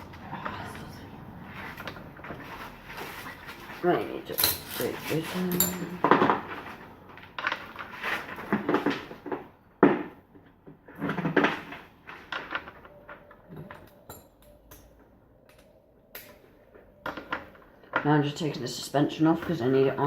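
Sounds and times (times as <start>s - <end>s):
metal tools knocking and clattering: 4.3s - 6.4s.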